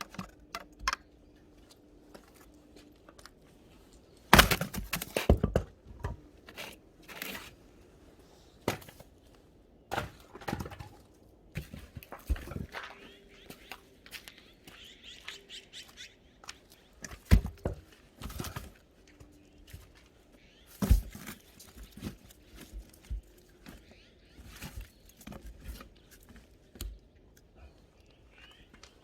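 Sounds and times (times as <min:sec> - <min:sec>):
firewood knocking and thudding: 0:04.3 - 0:06.2, 0:09.9 - 0:12.7, 0:17.2 - 0:18.7
faint bird chirps: 0:12.5 - 0:17.3, 0:19.1 - 0:29.0.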